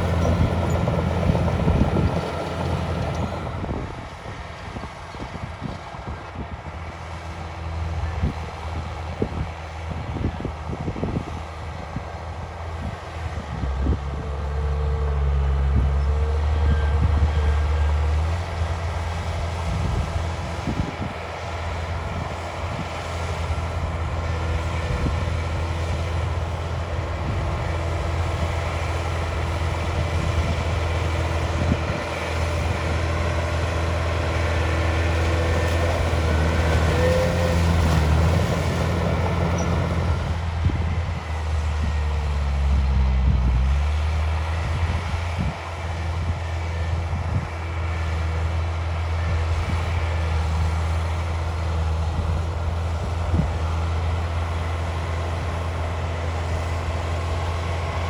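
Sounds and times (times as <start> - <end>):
diesel machinery engine drone: 0.0 - 58.0.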